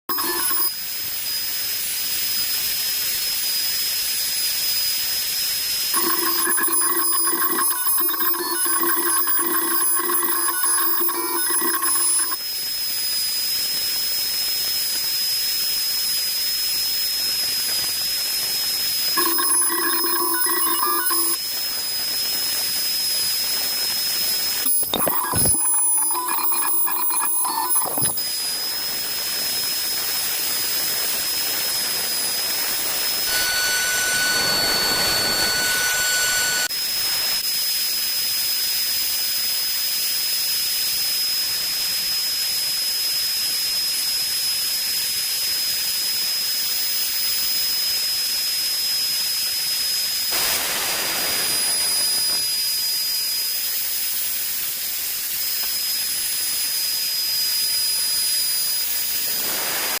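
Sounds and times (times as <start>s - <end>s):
steady tones: 0.1s - 0.7s, 6.0s - 12.4s, 19.2s - 21.4s, 24.7s - 28.2s
hiss of wood cutting: 59.0s - 60.0s.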